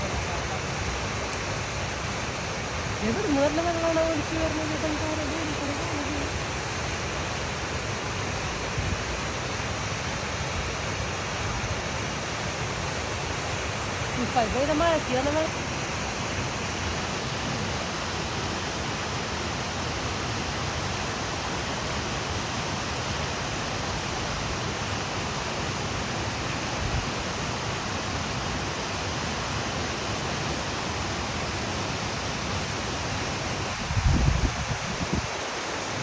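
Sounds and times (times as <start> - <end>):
waterfall rushing: 0.0 - 36.0
wind on microphone: 26.6 - 27.5, 32.9 - 36.0.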